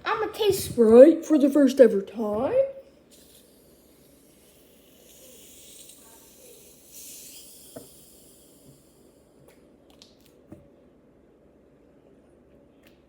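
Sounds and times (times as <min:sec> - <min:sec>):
soda fizzing hiss: 0:03.1 - 0:09.4.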